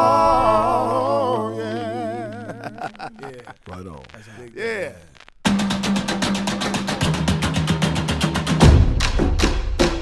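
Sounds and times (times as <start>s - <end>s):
music with percussive beat: 5.4s - 10.0s.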